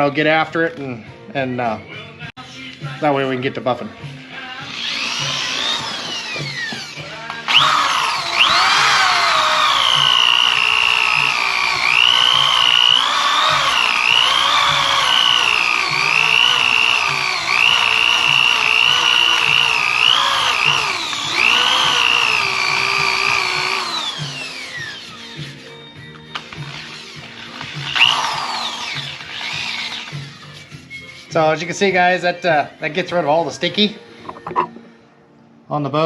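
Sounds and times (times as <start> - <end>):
air tool high whine: 4.6 - 30.6.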